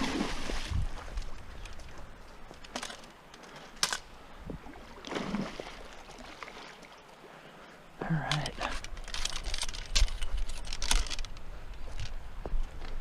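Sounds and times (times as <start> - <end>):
fishing gear knocks and clicks: 2.5 - 4.1, 8.2 - 12.2.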